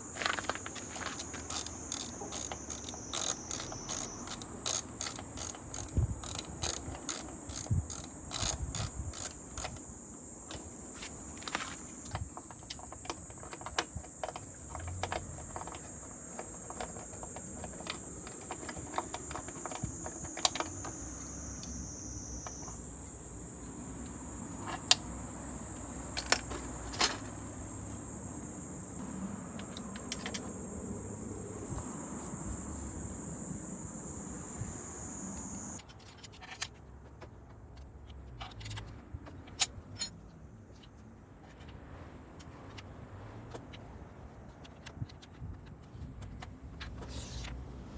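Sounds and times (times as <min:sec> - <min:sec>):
ratchet wrench clicking: 0:00.3 - 0:09.8.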